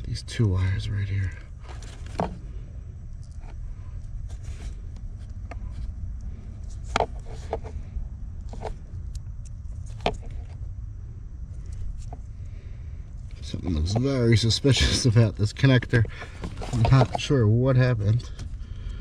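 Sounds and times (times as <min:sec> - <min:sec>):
steady low rumble: 0:00.0 - 0:19.0
light rustles: 0:15.8 - 0:17.4.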